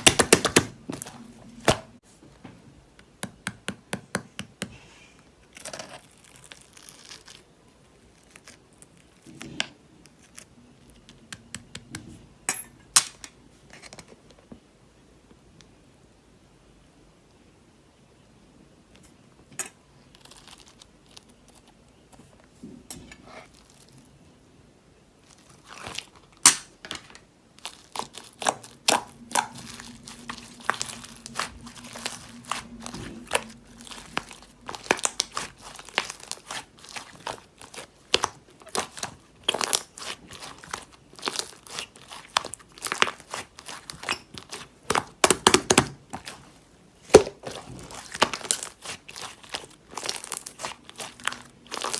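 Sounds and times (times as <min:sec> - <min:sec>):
crinkly material rustling: 0:05.5 - 0:11.0, 0:19.8 - 0:24.2, 0:27.1 - 0:45.3, 0:45.9 - 0:51.9.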